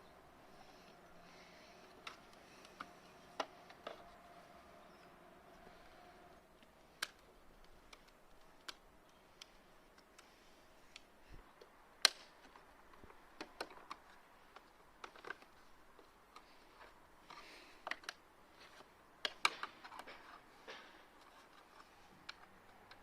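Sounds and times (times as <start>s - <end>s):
plastic parts clicking and tapping: 1.8s - 4.1s, 6.6s - 10.3s, 10.9s - 23.0s.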